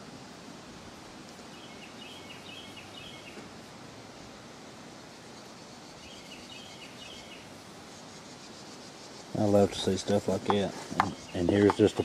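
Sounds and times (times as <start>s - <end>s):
outdoor background noise: 0.0s - 12.0s
bird chirping: 1.5s - 3.5s, 5.3s - 12.0s.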